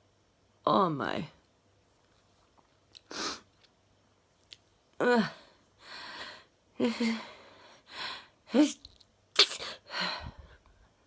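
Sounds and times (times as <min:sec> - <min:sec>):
woman sneezing: 0:09.4 - 0:09.8.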